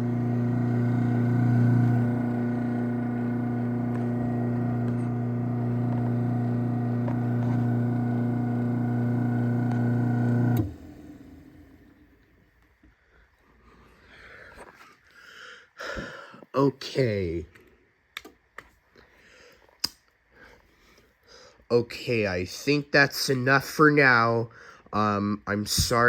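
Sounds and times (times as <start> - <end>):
opener stop click: 0.0 - 11.8
garage door opener motor hum: 0.0 - 12.1.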